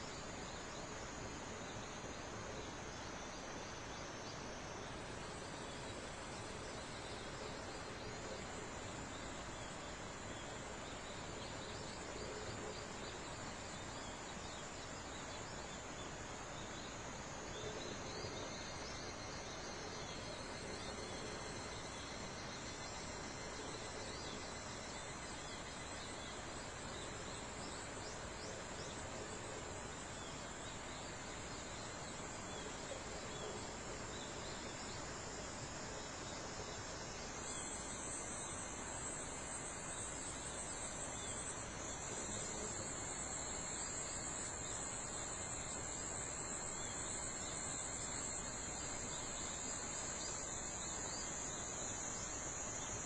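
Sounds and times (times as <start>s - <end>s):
faint background hiss: 0.0s - 53.0s
high-pitched insect trill: 17.8s - 53.0s.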